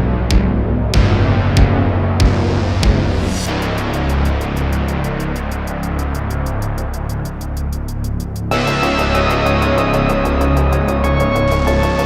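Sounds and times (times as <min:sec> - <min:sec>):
music with beat and deep bass: 0:00.0 - 0:12.0.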